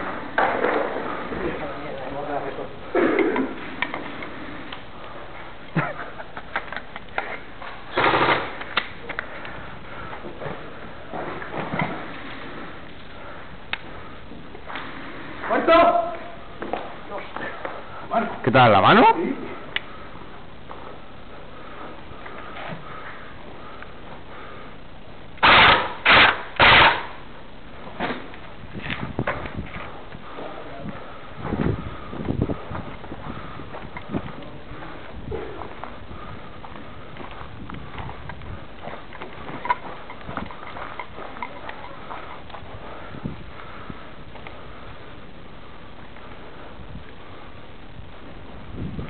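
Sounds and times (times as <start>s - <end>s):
airsoft gun full-auto burst: 25.4s - 27.2s.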